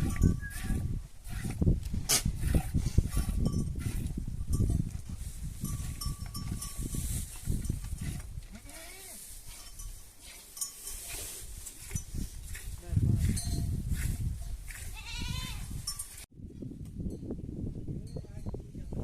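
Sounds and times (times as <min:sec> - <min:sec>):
goats bleating: 0:14.9 - 0:15.6.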